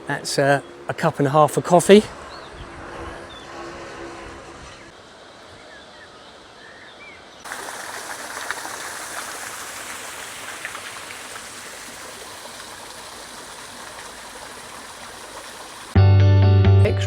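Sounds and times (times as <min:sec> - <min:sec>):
fountain water splashing: 0:07.4 - 0:16.0.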